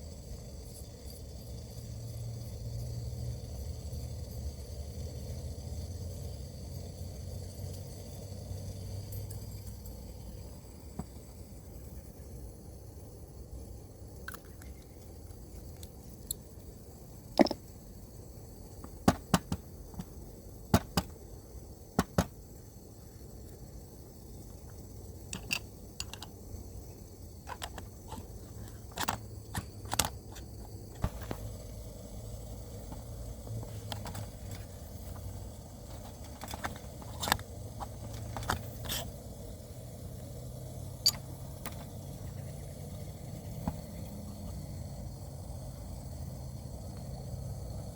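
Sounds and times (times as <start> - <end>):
coffee gear clicks and knocks: 17.4 - 17.7, 18.8 - 21.2, 22.0 - 22.4, 24.7 - 26.4, 27.4 - 31.6, 32.9 - 39.1, 41.0 - 42.0.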